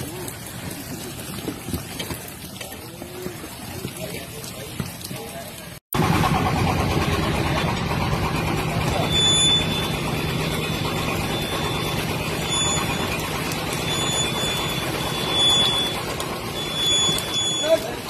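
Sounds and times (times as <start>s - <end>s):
engine humming: 6.0s - 18.0s.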